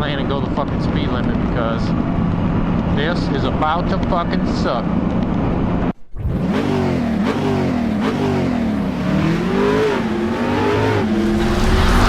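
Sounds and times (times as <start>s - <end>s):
motorcycle engine revving: 6.2s - 12.0s.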